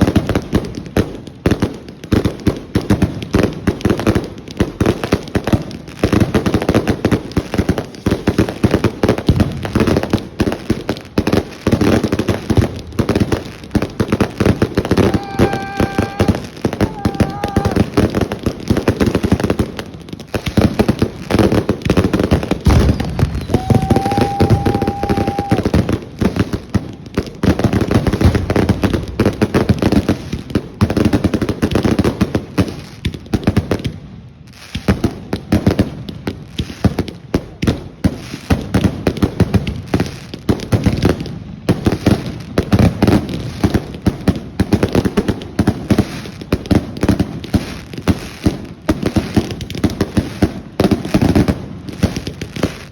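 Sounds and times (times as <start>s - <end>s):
fireworks bangs and crackles: 0.0s - 52.9s
steady whistle: 22.9s - 25.6s.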